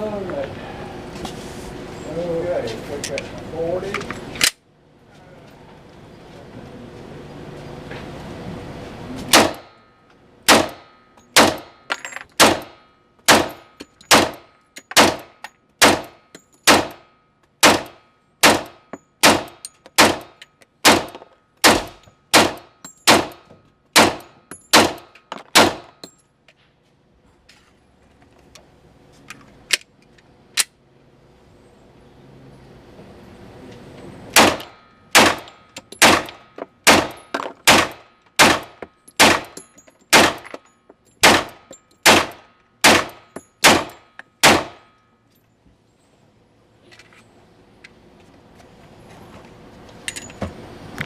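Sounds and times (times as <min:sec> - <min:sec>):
pistol shots: 0:09.3 - 0:09.7, 0:10.5 - 0:11.8, 0:12.4 - 0:17.0, 0:17.6 - 0:23.4, 0:24.0 - 0:25.9, 0:34.4 - 0:40.4, 0:41.2 - 0:44.8.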